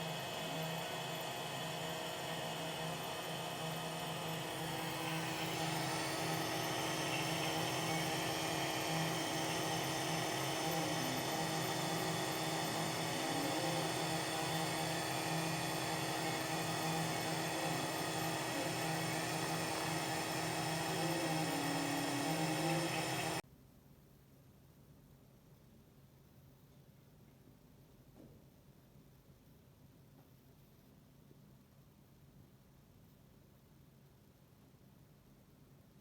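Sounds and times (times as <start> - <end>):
laser engraver fan hum: 0.0 - 23.4
stepper motor whine: 0.0 - 23.4.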